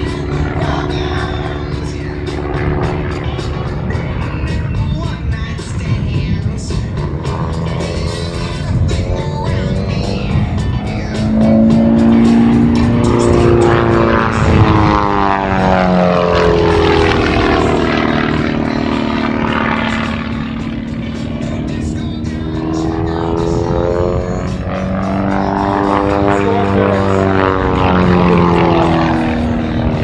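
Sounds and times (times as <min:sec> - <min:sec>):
biplane engine and propeller: 0:00.0 - 0:30.0.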